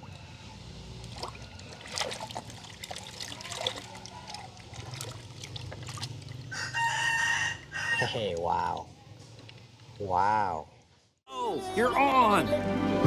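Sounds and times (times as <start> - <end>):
water trickling and splashing: 0.0 - 7.0.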